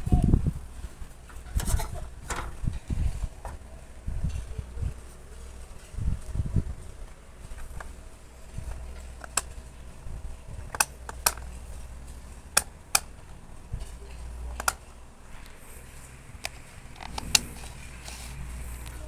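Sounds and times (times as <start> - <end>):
ceiling fan humming: 0.0 - 19.0
sharp clicks: 8.7 - 9.6, 10.6 - 13.4, 14.4 - 15.6, 16.4 - 19.0.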